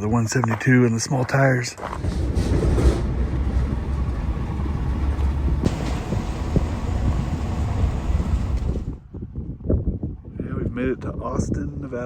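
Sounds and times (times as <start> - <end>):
vehicle driving on road: 1.8 - 9.0.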